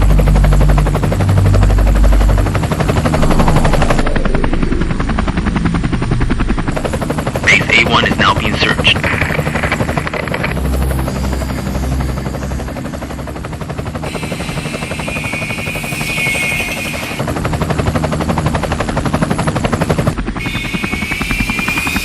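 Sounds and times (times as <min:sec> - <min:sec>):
high whine: 0:01.0 - 0:17.2
toy helicopter rotor chop: 0:14.0 - 0:17.3, 0:20.4 - 0:22.0.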